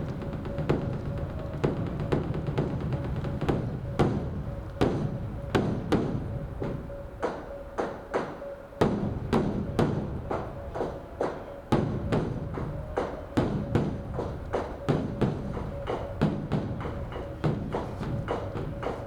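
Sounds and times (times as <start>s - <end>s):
large drum beaten with sticks: 8.8s - 19.0s.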